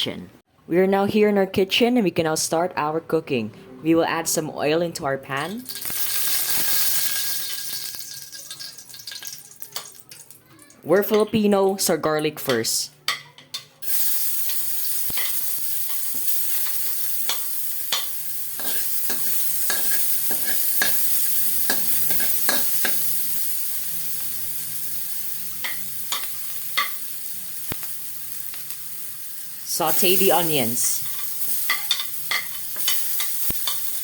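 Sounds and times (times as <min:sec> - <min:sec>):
garlic sizzling in hot oil: 0:05.6 - 0:10.4, 0:13.8 - 0:34.0.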